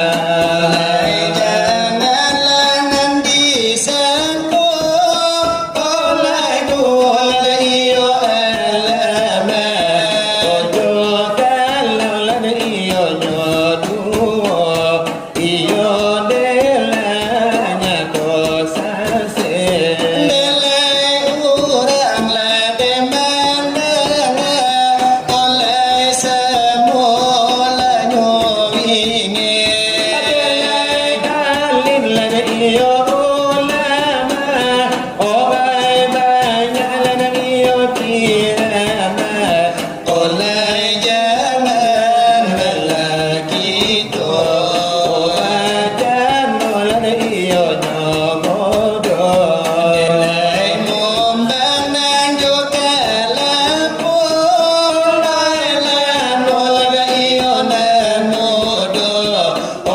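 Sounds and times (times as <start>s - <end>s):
hand-beaten brass tray percussion: 0.0s - 59.9s
singers chanting devotional song: 0.0s - 59.9s.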